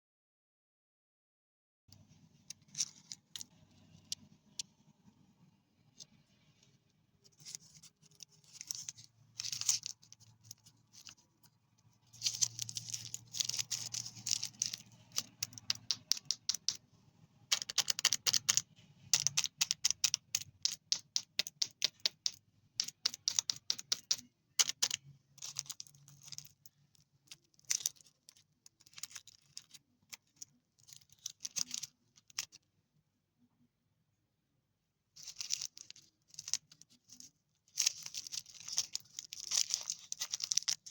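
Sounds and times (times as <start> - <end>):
plastic wrappers crinkling: 7.4 - 11.2, 12.0 - 16.7, 22.9 - 32.6, 35.2 - 40.9.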